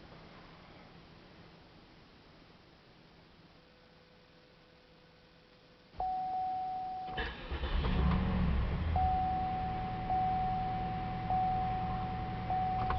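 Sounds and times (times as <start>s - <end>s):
fuel pump whine: 6.0s - 12.9s
car engine cranking and running: 7.1s - 12.9s.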